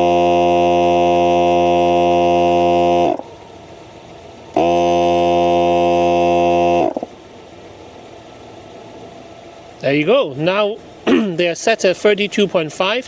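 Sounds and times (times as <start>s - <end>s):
air compressor buzzing hum: 0.0s - 11.6s.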